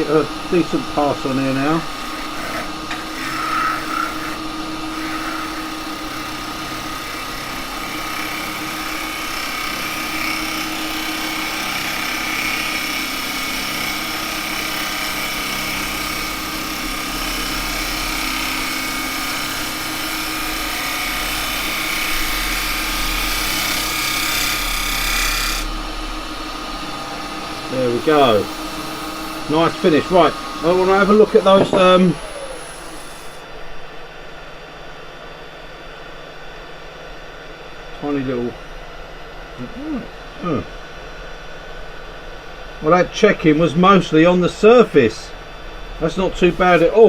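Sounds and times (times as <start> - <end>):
chisel cutting spinning wood: 0.0 - 33.5, 46.0 - 47.0
lathe motor humming: 0.0 - 34.7, 37.2 - 47.0.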